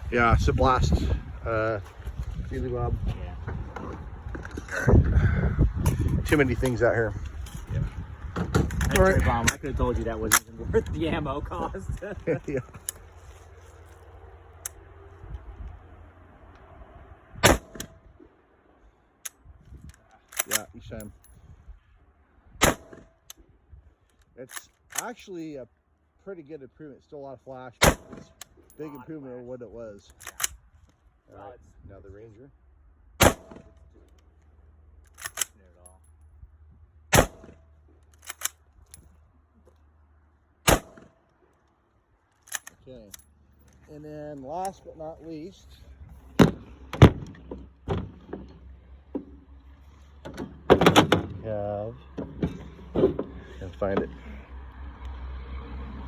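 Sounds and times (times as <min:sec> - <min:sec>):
gunshot: 0:17.4 - 0:17.9, 0:22.6 - 0:23.1, 0:27.8 - 0:28.4, 0:33.2 - 0:33.7, 0:37.1 - 0:37.6, 0:40.7 - 0:41.1.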